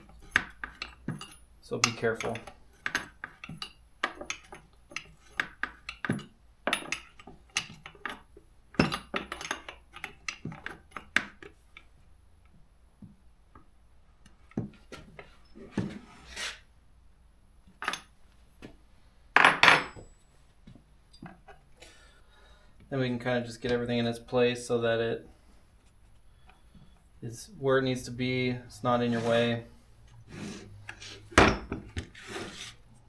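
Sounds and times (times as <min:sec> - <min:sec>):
metal parts clinking on workbench: 0:00.2 - 0:11.1.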